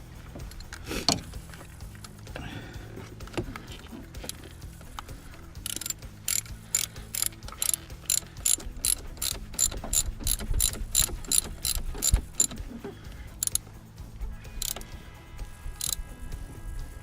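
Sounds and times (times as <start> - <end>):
ratchet wrench clicking: 0.3 - 2.5, 3.2 - 13.7, 14.5 - 14.9, 15.7 - 16.1.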